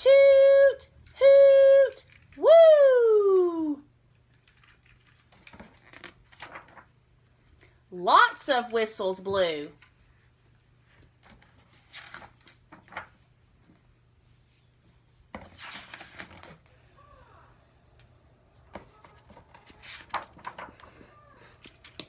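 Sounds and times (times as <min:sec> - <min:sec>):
faint low hum: 0:00.0 - 0:22.0
book pages rustling: 0:04.2 - 0:07.1, 0:09.7 - 0:16.7, 0:18.5 - 0:22.0.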